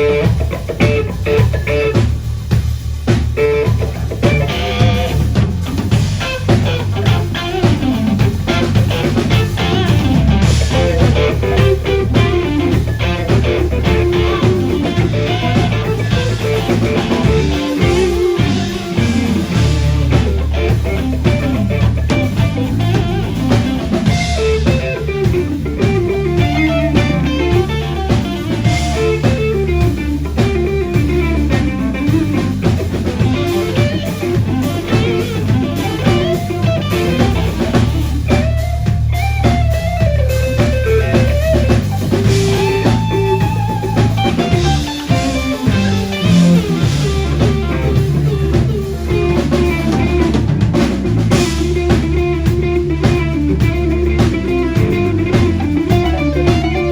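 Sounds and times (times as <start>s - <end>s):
electric guitar solo: 0.0s - 2.0s, 3.4s - 56.9s
bass guitar: 0.0s - 56.9s
drum kit: 0.0s - 56.9s.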